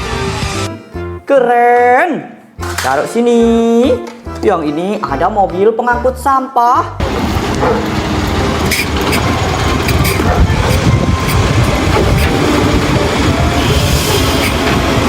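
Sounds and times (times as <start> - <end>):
toy truck wheels rumbling on floor: 7.0 - 15.0.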